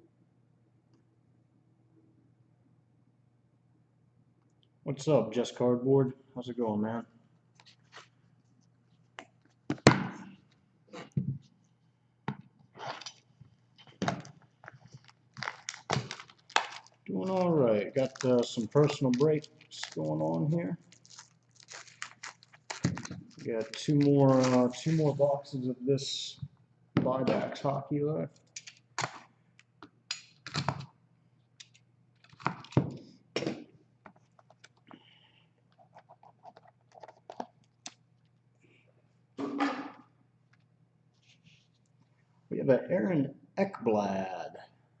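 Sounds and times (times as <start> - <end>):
card packaging crinkling: 13.8 - 25.6, 35.7 - 38.0.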